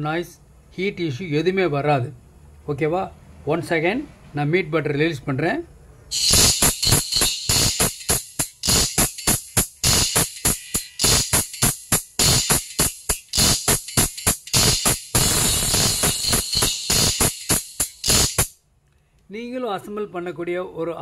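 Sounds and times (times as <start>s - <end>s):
music with fast percussion beat: 6.1s - 18.6s.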